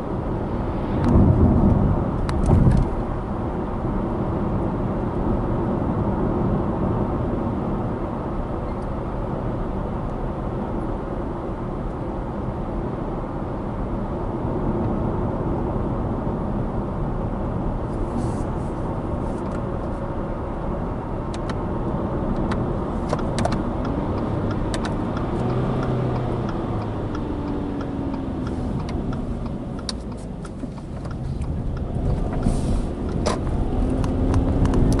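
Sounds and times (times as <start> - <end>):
car engine and road rumble: 0.0 - 35.0
sharp ticks: 22.4 - 31.9.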